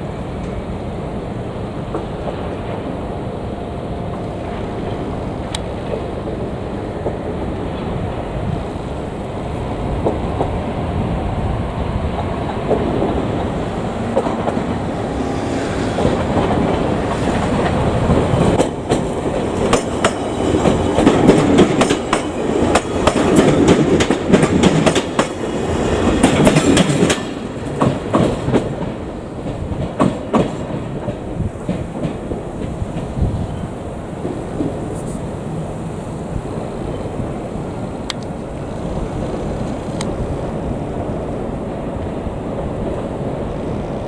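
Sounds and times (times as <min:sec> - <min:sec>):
electric train passing: 0:00.0 - 0:44.0
train wheels clacking over rail joints: 0:12.0 - 0:35.2.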